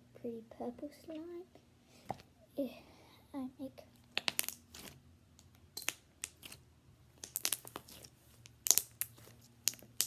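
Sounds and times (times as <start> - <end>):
slime popping and clicking: 4.2 - 4.6, 7.2 - 10.0.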